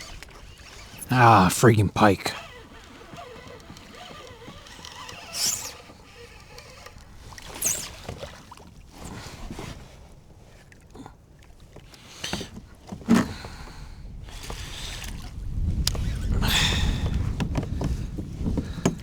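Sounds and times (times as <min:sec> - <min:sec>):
wind and water wash: 0:11.6 - 0:19.0.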